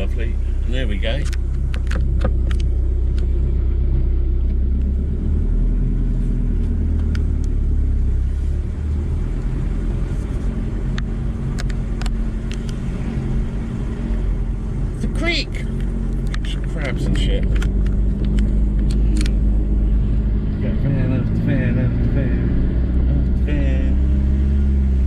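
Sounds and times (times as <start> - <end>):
road rumble: 0.0 - 25.0
van engine driving: 0.0 - 25.0.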